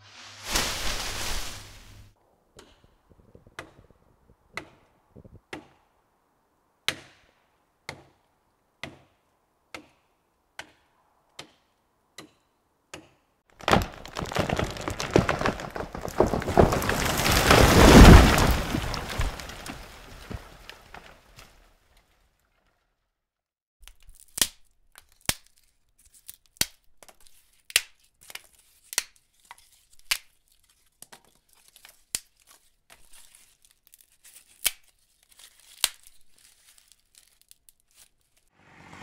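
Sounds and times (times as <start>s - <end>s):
tree cracking and crashing: 0.2s - 2.2s, 13.5s - 22.8s, 34.6s - 39.0s.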